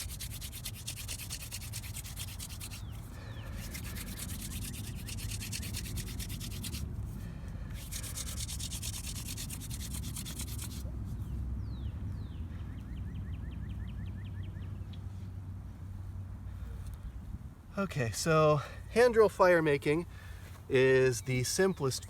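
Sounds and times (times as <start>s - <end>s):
wooden hand drill scratchy rubbing: 0.0s - 6.8s, 7.7s - 10.8s.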